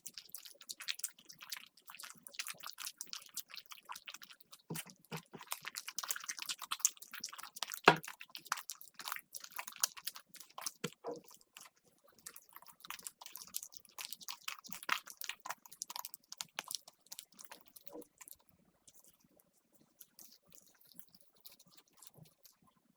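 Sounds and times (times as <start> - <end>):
slime crackling and popping: 2.2 - 18.4.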